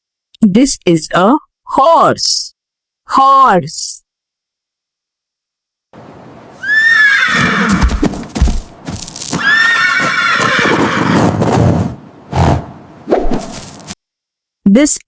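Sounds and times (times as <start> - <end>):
horse neighing: 6.5 - 8.4, 9.2 - 11.4.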